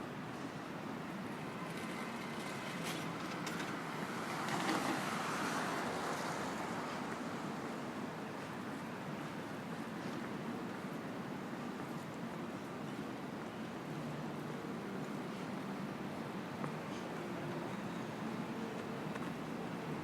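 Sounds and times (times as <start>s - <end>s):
passing cars: 1.5s - 11.2s.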